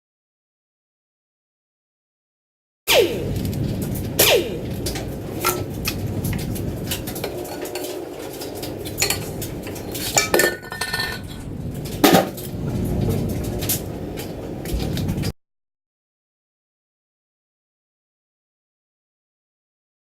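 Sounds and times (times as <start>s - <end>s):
ringing metal knocks: 4.7s - 12.4s
metal engine parts clanking: 4.8s - 15.1s.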